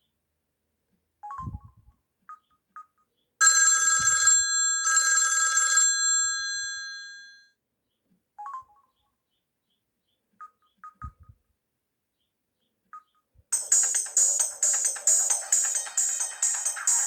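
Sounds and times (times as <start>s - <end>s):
telephone bell ringtone: 3.4s - 7.5s, 13.5s - 17.0s.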